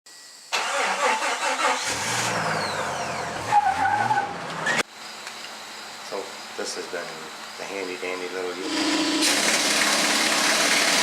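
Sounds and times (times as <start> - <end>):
vehicle engine revving: 1.4 - 4.9, 8.6 - 11.0.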